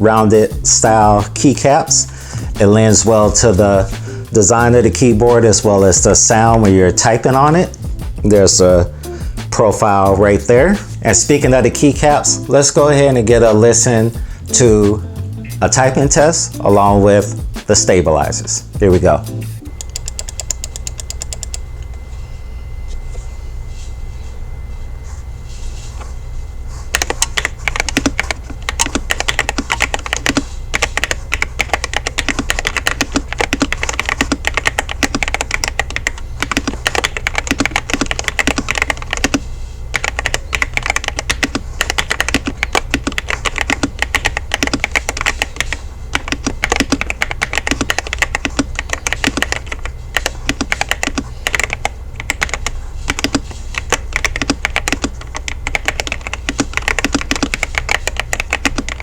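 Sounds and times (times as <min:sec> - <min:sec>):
steady low hum: 0:00.0 - 0:59.0
mechanical keyboard typing: 0:19.8 - 0:21.6, 0:26.9 - 0:59.0.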